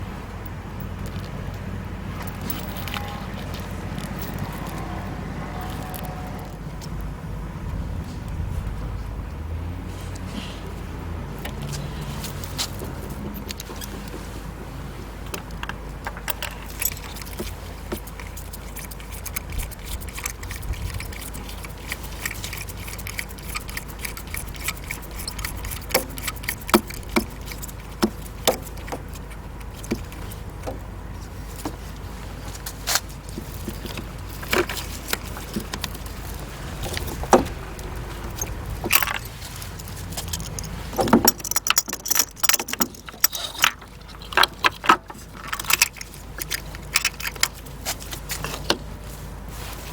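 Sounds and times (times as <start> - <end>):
metal hand tools clinking: 2.2 - 4.9, 15.4 - 30.7, 33.6 - 48.7.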